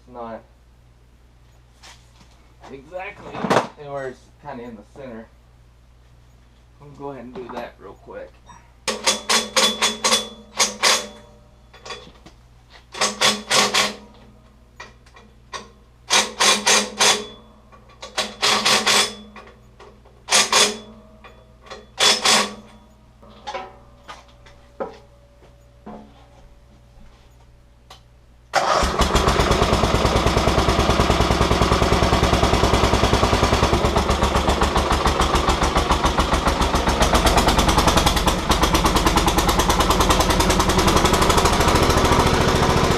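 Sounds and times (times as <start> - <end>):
metal tool clanks and knocks: 8.5 - 12.2, 16.7 - 25.0
backhoe engine running: 28.6 - 42.9.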